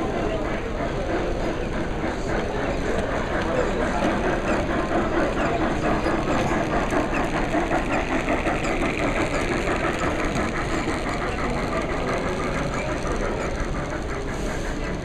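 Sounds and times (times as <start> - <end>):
machine running: 2.2 - 15.0
rapid even ticking: 4.1 - 14.3.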